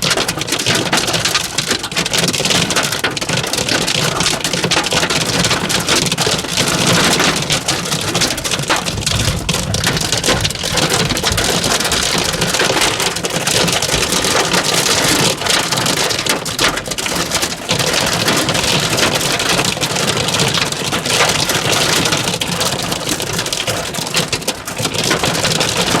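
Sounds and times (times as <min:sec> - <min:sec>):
hailstones clattering: 0:00.0 - 0:26.0.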